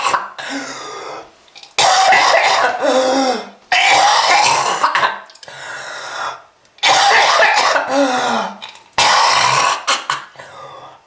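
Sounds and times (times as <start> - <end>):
person coughing harshly: 0.0 - 0.8, 1.8 - 5.2, 6.8 - 10.6.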